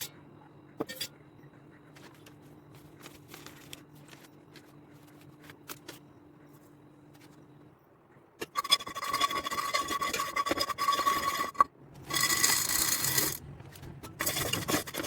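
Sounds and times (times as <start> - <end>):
faint steady hum: 0.0 - 15.0
popcorn popping in a pan: 14.1 - 15.0.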